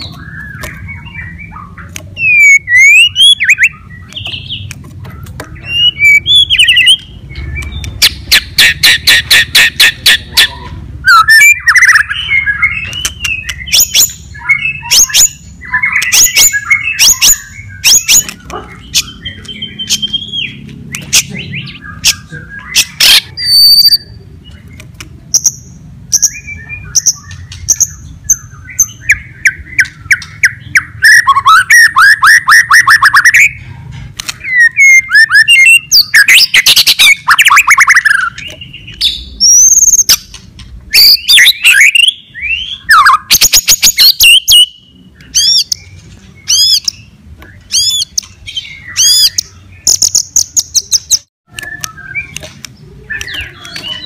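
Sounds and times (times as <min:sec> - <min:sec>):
songbird singing varied phrases: 0:00.0 - 0:33.6, 0:34.4 - 0:54.0.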